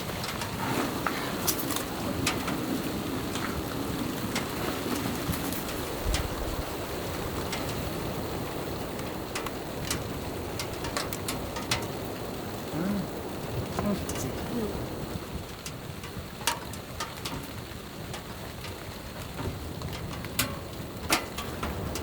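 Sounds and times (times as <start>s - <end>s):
rain hissing on a tent: 0.0s - 22.0s
sharp ticks: 5.2s - 12.3s, 13.5s - 22.0s.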